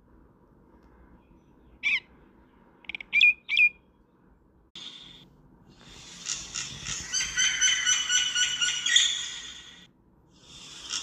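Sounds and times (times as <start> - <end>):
myna bird chirping: 1.2 - 4.0, 6.0 - 9.9.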